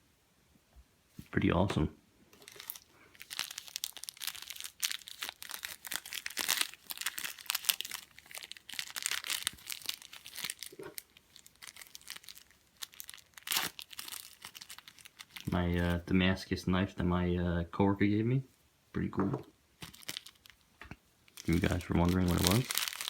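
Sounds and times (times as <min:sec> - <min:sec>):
packaging crinkling and tearing: 0:02.4 - 0:16.0, 0:19.8 - 0:20.7, 0:21.3 - 0:23.0.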